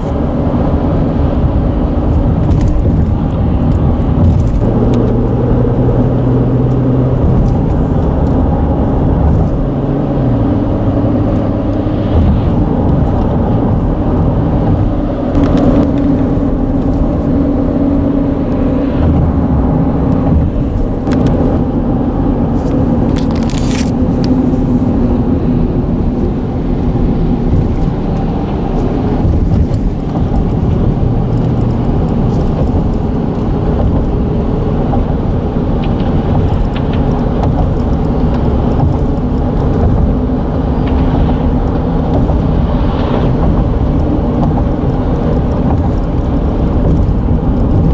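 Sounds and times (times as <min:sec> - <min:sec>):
traffic rumbling on a bridge: 0:00.0 - 0:47.9.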